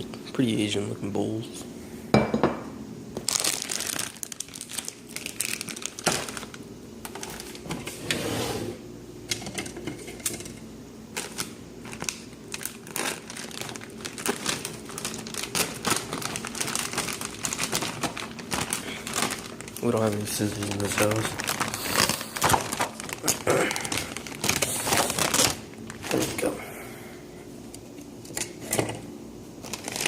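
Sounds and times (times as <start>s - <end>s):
plastic packaging crinkling: 3.2s - 7.8s, 11.1s - 26.6s, 29.6s - 30.0s.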